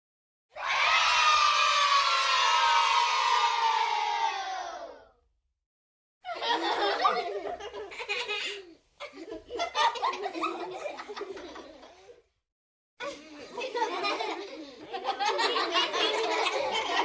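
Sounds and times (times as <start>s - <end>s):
children cheering: 0.5s - 5.1s
children laughing: 6.2s - 12.2s, 13.0s - 17.0s.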